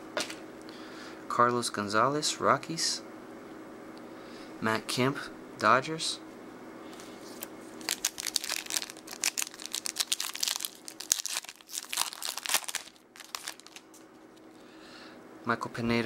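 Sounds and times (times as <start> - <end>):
plastic wrapper crinkling and tearing: 7.4 - 14.1.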